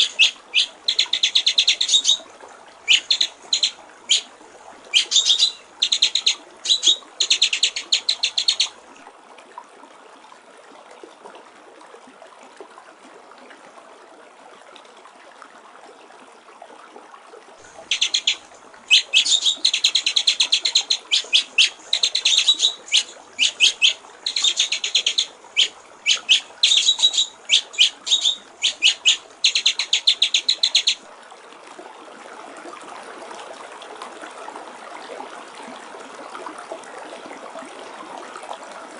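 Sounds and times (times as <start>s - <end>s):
bird singing rattling high notes: 0.0s - 2.2s, 2.9s - 4.3s, 5.0s - 8.7s, 17.9s - 31.0s
trickling water: 0.0s - 38.9s.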